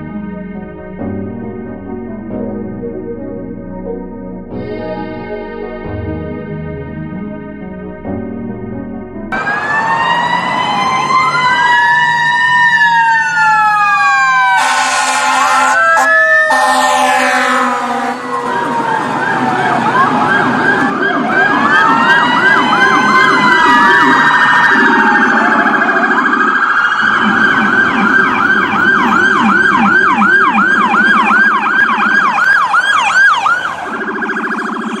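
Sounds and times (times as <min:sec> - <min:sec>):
emergency vehicle sirens: 0:00.0 - 0:03.6, 0:09.3 - 0:35.0
lower warbling tone: 0:00.0 - 0:09.4, 0:24.9 - 0:32.4.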